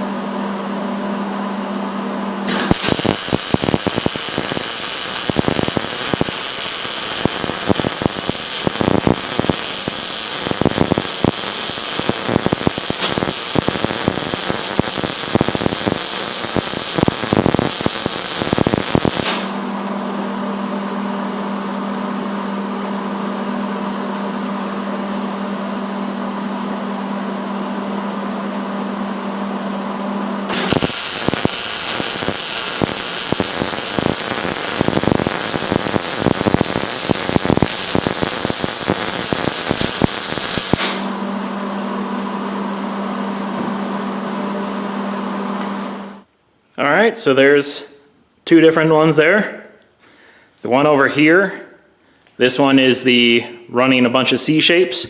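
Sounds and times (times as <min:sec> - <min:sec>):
steady low hum: 0:00.0 - 0:46.8
welding arc crackling: 0:02.5 - 0:19.7, 0:30.5 - 0:41.3.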